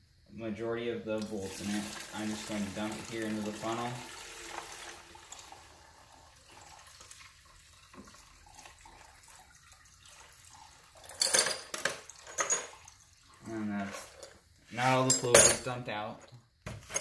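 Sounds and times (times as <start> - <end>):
liquid trickling through a funnel: 1.1 - 11.2, 12.0 - 14.2.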